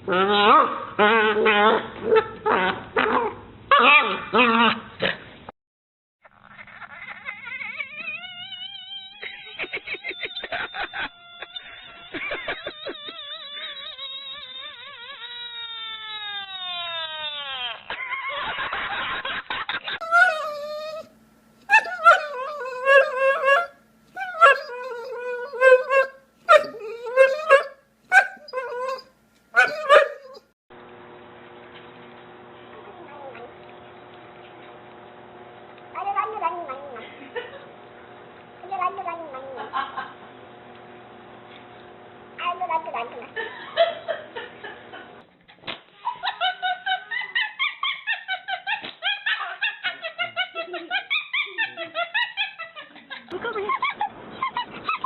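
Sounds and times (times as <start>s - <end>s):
dog whining and yowling: 6.6s - 9.7s, 11.4s - 17.8s, 20.0s - 30.6s, 36.0s - 37.1s.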